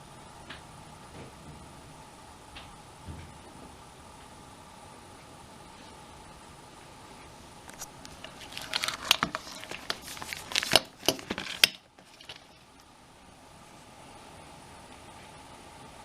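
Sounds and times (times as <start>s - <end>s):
paper pages crinkling: 7.7s - 12.6s.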